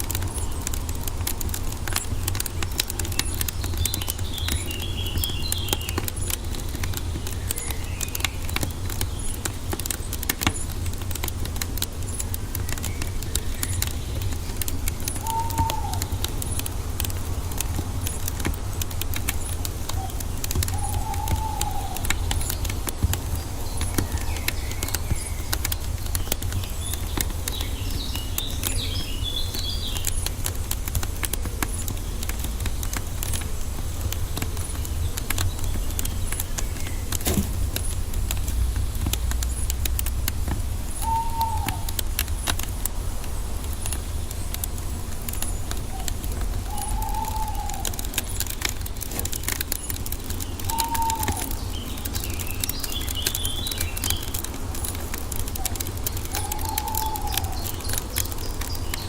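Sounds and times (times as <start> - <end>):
low steady rumble: 0.0 - 49.0
birds chirping: 0.0 - 59.0
wood fire crackling: 0.0 - 59.0
bird whistled calls: 15.1 - 16.6, 19.9 - 22.8, 41.0 - 42.0, 45.4 - 48.2, 50.5 - 54.4, 55.6 - 59.0.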